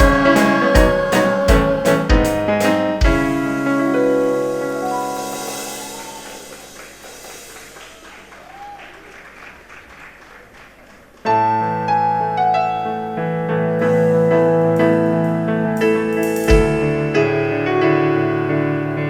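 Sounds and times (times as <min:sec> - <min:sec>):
keyboard chord ringing: 0:11.3 - 0:19.0.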